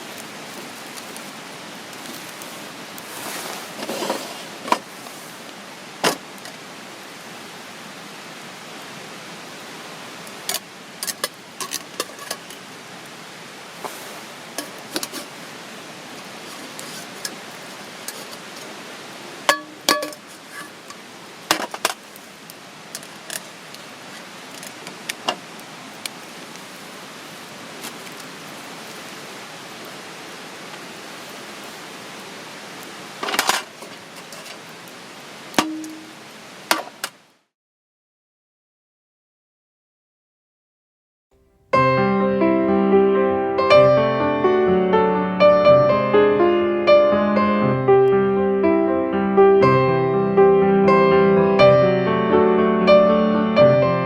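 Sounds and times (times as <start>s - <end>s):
steady hiss: 0.0s - 37.5s, 41.4s - 54.0s
metal cookware clinking: 19.5s - 20.2s, 35.6s - 36.1s.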